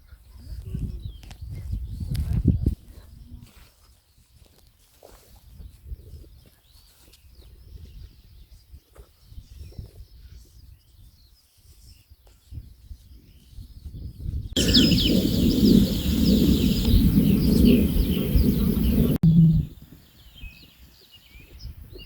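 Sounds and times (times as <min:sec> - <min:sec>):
small birds chirping: 0:00.1 - 0:22.0
low rumbling noise: 0:14.6 - 0:20.1.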